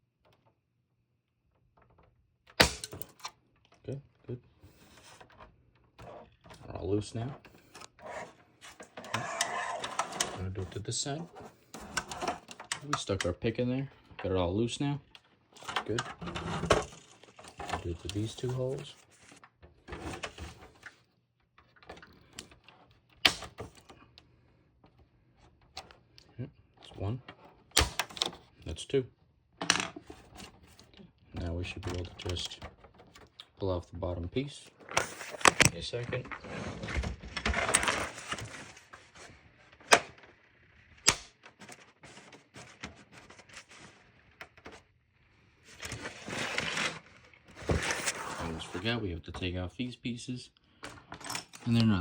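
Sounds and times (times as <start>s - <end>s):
metal pick scraping plastic: 4.7s - 13.4s, 15.0s - 24.2s, 34.7s - 44.9s
plastic rustling: 34.8s - 44.9s.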